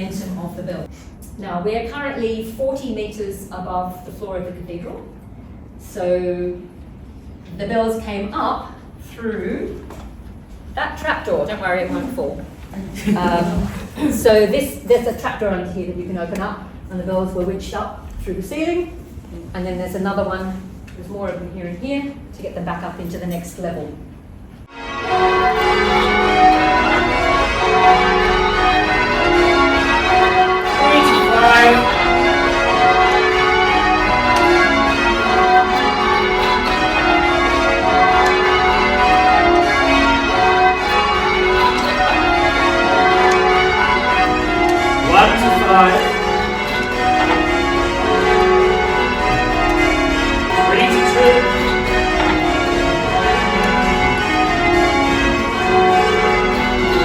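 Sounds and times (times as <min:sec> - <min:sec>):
church bells ringing changes: 0:24.7 - 0:57.0.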